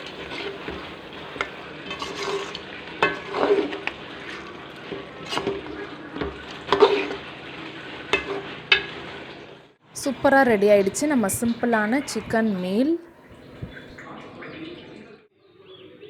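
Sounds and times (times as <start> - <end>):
spoon scraping a pan: 0.0 - 7.3, 8.0 - 8.9
gravy sizzling: 0.0 - 14.0.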